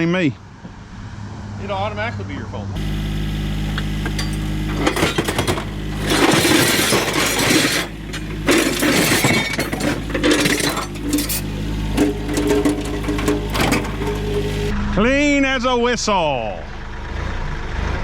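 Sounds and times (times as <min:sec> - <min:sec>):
engine running: 0:02.8 - 0:14.7
scrap metal clanking and crashing: 0:04.0 - 0:14.7.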